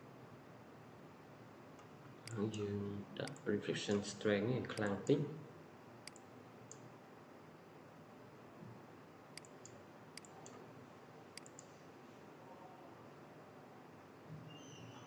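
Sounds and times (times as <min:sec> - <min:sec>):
computer mouse clicks: 0:03.2 - 0:04.0, 0:06.0 - 0:06.9, 0:09.4 - 0:10.6, 0:11.3 - 0:11.8.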